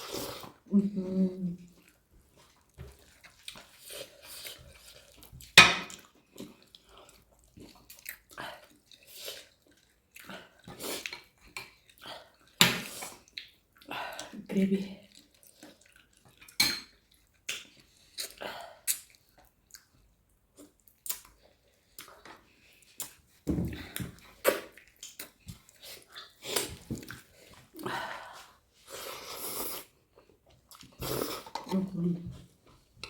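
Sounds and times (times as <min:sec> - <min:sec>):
chewing food with wet smacks: 0:01.5 - 0:14.4, 0:15.0 - 0:28.5, 0:29.9 - 0:33.0.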